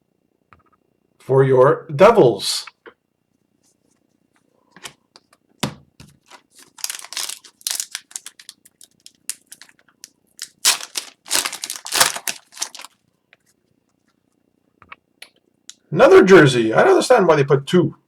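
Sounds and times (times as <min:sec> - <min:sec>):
wrapper crinkling and rustling: 0:06.2 - 0:13.0.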